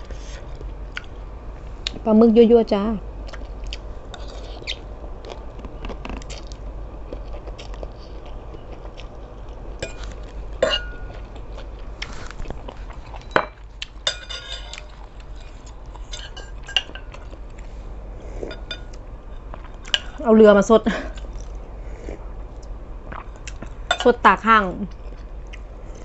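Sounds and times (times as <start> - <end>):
low steady hum: 0.0 - 26.0
utensils clinking against a bowl: 9.8 - 11.3, 13.1 - 17.4, 18.5 - 19.0, 23.9 - 24.2.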